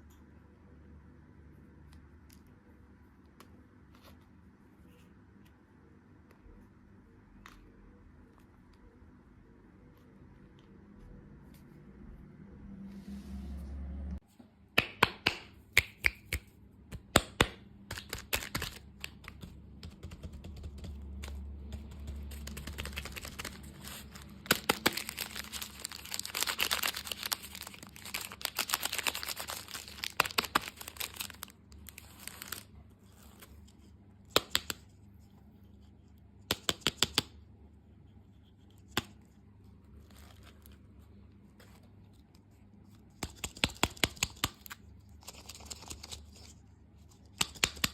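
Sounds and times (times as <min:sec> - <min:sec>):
candy crunching and crackling: 0:22.2 - 0:33.4.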